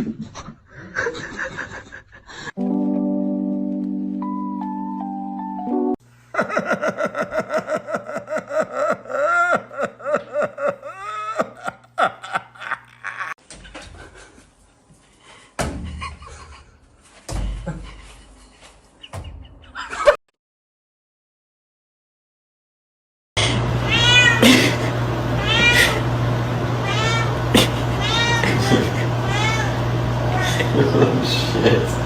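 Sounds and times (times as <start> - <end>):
person laughing hard: 0.0 - 2.6, 6.3 - 13.4, 17.5 - 18.6, 19.5 - 20.2, 24.4 - 25.0, 25.6 - 26.0, 27.5 - 29.2, 30.3 - 30.9
knocks and thumps: 15.6 - 16.4, 17.2 - 18.0.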